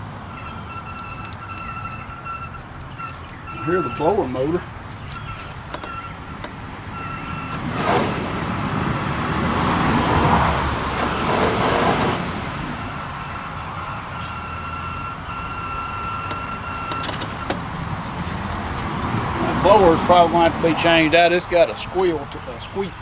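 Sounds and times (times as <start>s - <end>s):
blower motor hum: 0.0s - 20.6s
thin high squeak: 0.3s - 8.3s
loud rushing noise: 6.8s - 13.3s.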